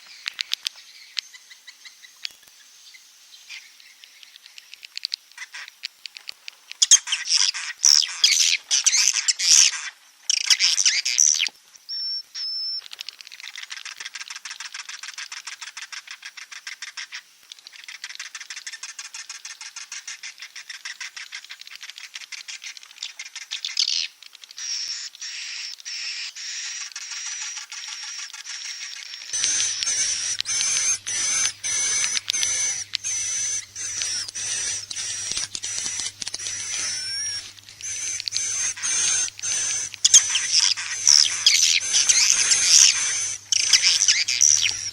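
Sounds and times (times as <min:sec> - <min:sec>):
swiftlets chattering in clicking trills: 0:27.0 - 0:44.9.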